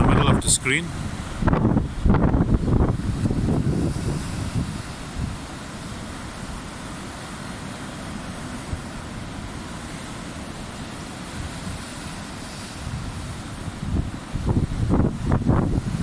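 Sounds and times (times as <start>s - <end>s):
wind buffeting microphone: 0.0s - 5.5s, 12.8s - 16.0s
sea surf: 0.0s - 16.0s.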